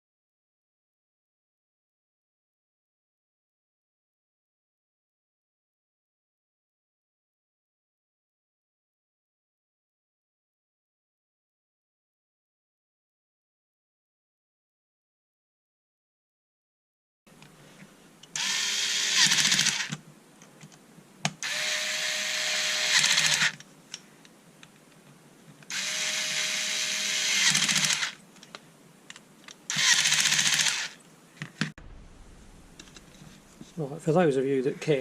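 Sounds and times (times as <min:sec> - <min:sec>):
cordless screwdriver motor whining: 0:18.4 - 0:19.9, 0:21.4 - 0:23.6, 0:25.7 - 0:28.2, 0:29.7 - 0:31.0.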